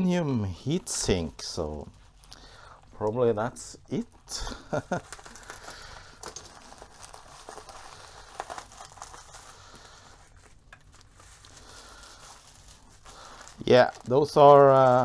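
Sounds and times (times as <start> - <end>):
plastic packaging crinkling: 0.4 - 15.0.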